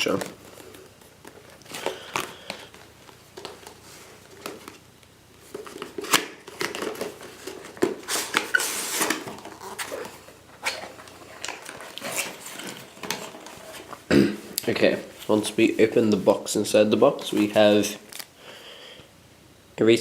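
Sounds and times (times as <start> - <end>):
cardboard rustling scrape: 5.4 - 16.4
cardboard box being opened: 5.5 - 14.0.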